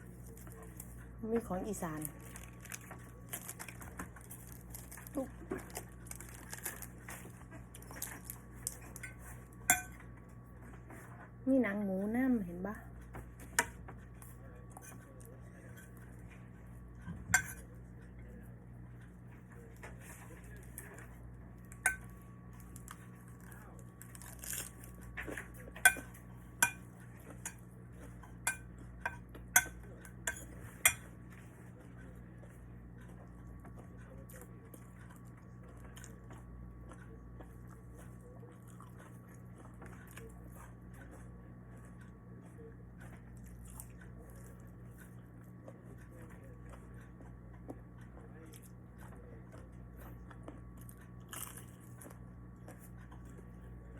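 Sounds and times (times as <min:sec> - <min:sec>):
steady low hum: 0:00.0 - 0:53.9
utensils clinking on plates: 0:17.2 - 0:17.7.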